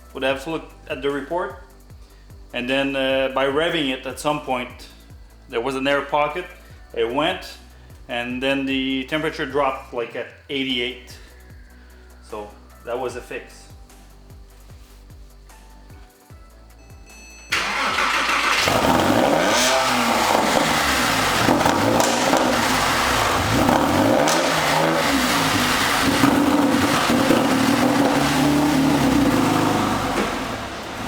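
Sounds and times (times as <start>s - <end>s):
car engine revving: 17.5s - 31.0s.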